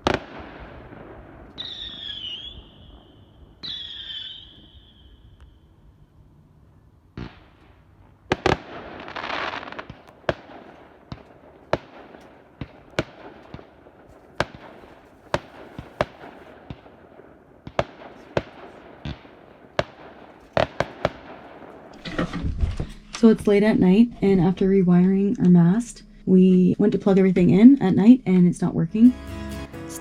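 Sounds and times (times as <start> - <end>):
fireworks crackling: 0.0 - 4.8, 7.2 - 22.0
fireworks bangs: 0.0 - 5.5, 7.1 - 28.4.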